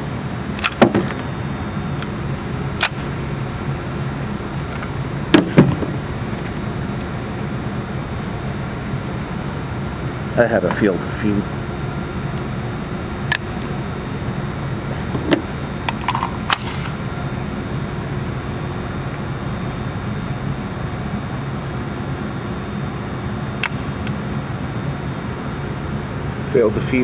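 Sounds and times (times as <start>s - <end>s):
air-handling drone: 0.0s - 26.4s
sharp clicks: 2.8s - 3.6s, 23.6s - 24.2s.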